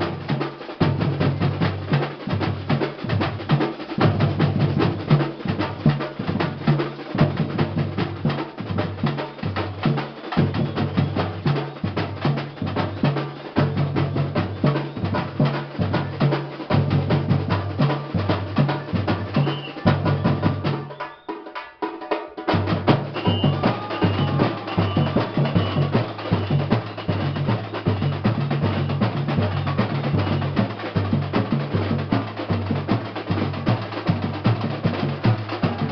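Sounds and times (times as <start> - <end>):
drum group playing fast rhythm: 0.0 - 35.9
bass drums pounding: 22.5 - 35.9.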